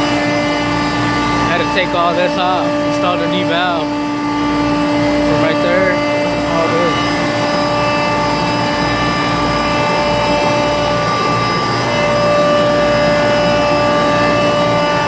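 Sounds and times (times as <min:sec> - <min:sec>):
chiller mechanical drone: 0:00.0 - 0:15.0.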